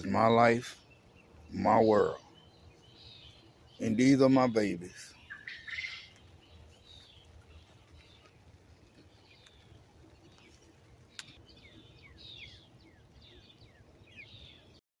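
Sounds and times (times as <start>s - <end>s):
chicks peeping: 5.2s - 14.6s.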